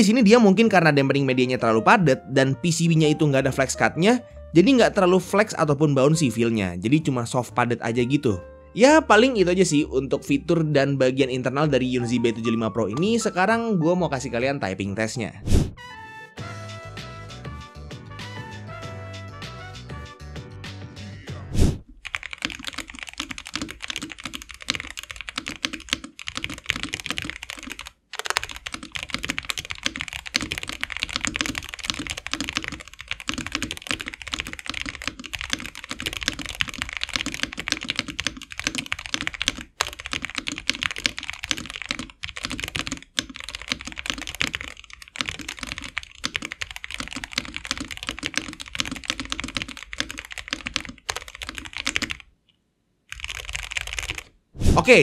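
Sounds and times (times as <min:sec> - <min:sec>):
mechanical keyboard typing: 0:22.0 - 0:52.3, 0:53.1 - 0:54.3.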